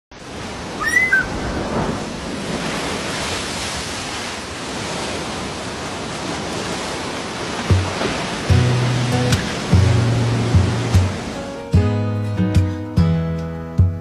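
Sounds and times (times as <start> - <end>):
short high chirps: 0.8 - 1.4
steady rushing noise: 7.4 - 11.5.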